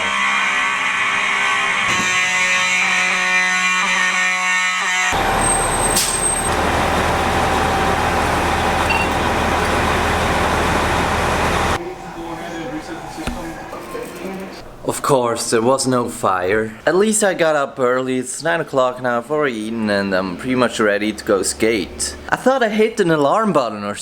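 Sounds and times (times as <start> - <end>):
fire alarm blaring: 0.0 - 12.1.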